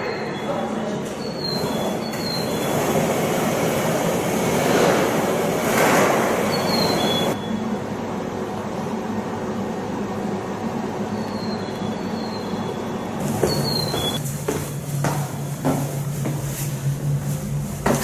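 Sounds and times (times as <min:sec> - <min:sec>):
high wheel squeals: 0:00.0 - 0:03.1, 0:06.2 - 0:07.6, 0:11.1 - 0:14.2
train rumbling on rails: 0:01.5 - 0:07.4.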